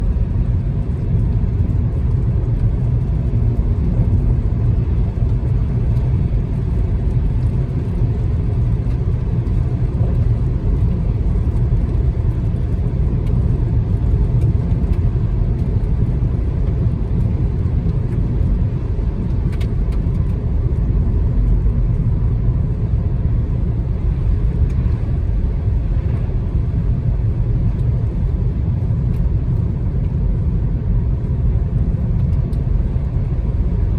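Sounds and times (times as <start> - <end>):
car road and engine noise: 0.0 - 33.9.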